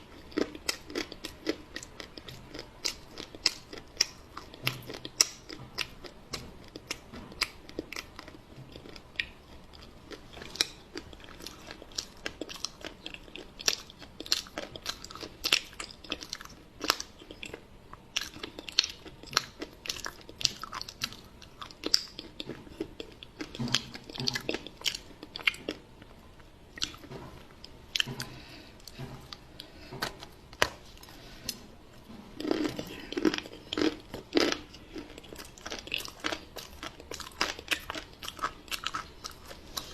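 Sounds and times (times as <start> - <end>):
crunchy bites and chewing: 28.0 - 39.9.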